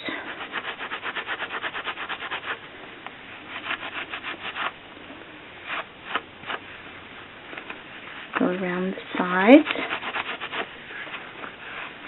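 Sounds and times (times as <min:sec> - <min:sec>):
sponge scrubbing metal: 0:00.0 - 0:02.6, 0:03.4 - 0:04.8, 0:09.6 - 0:12.0.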